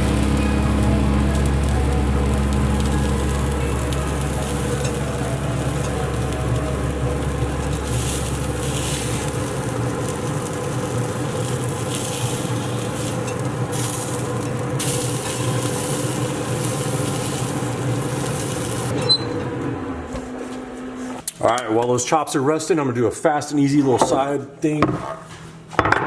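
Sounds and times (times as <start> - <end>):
meat sizzling on grill: 0.0 - 19.4
low steady hum: 0.0 - 21.8.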